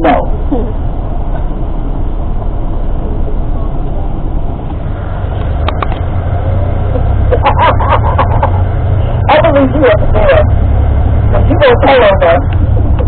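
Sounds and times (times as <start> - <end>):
bus engine and road rumble: 0.0 - 13.0.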